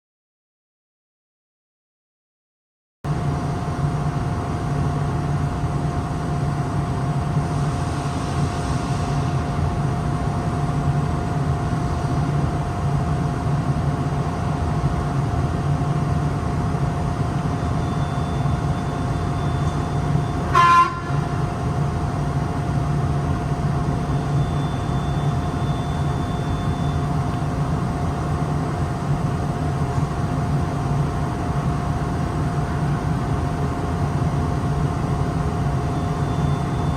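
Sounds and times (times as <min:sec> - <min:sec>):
industrial machinery humming: 0:03.1 - 0:36.9
loud horn-like beep: 0:17.8 - 0:21.4.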